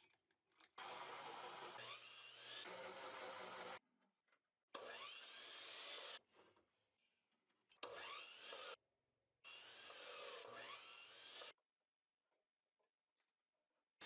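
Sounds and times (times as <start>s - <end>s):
tool sawing wood: 0.8s - 3.8s.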